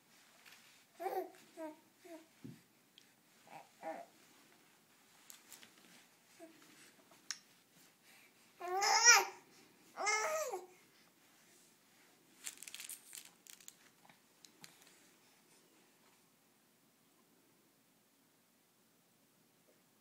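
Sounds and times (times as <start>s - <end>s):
soft rustle: 0.0s - 16.5s
baby babbling: 1.0s - 2.3s, 3.5s - 4.1s, 8.6s - 9.4s, 10.0s - 10.7s.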